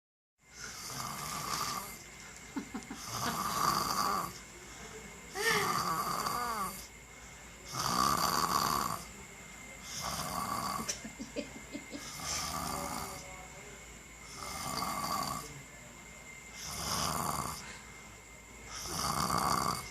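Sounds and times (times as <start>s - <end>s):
snoring: 0.5s - 2.0s, 3.0s - 4.4s, 5.3s - 7.0s, 7.6s - 9.2s, 9.8s - 11.0s, 12.0s - 13.3s, 14.2s - 15.6s, 16.5s - 17.8s, 18.7s - 19.9s
whistling snore gliding in pitch: 0.5s - 2.0s, 12.0s - 13.3s, 14.2s - 15.6s, 16.4s - 17.9s, 18.7s - 19.9s.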